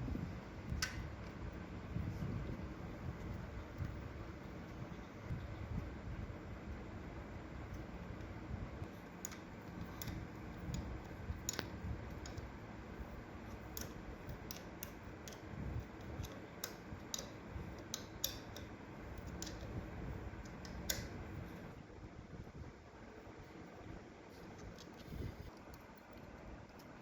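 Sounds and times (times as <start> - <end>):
low steady rumble: 0.0 - 27.0
light clicks and taps of tools: 7.7 - 12.6, 13.4 - 19.8, 20.4 - 21.7.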